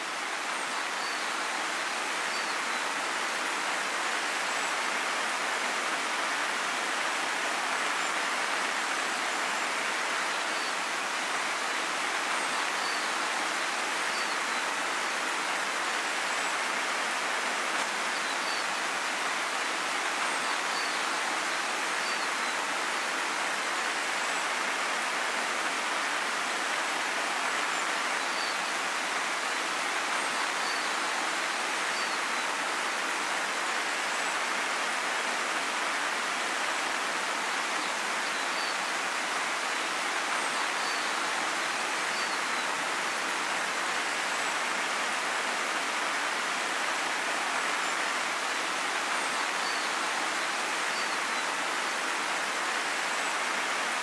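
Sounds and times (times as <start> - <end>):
river water rushing: 0.0 - 54.0.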